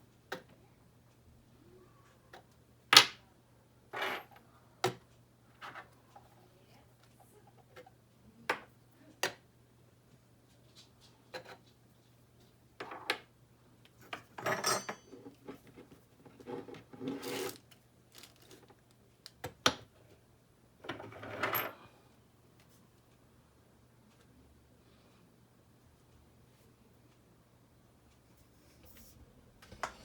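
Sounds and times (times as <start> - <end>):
rubbing and scraping sounds: 15.2 - 17.6.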